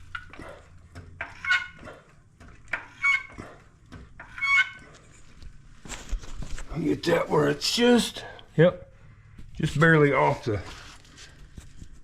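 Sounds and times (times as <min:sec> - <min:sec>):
jack squeaking: 0:00.0 - 0:05.1.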